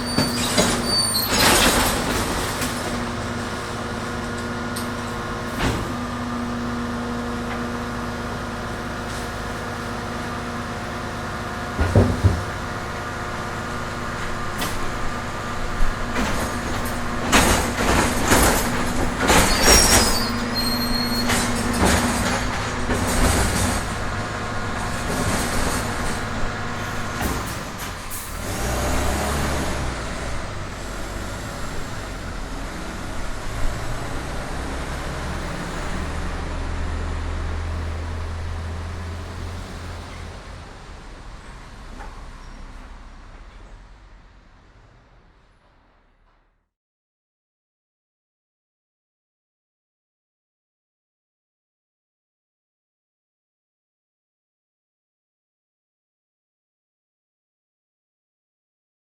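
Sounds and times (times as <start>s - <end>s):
high squeal: 0.0s - 1.9s, 19.3s - 21.8s
metal clanks and bangs: 0.0s - 6.1s, 11.8s - 30.1s
diesel engine idling: 2.9s - 17.3s, 23.8s - 44.5s.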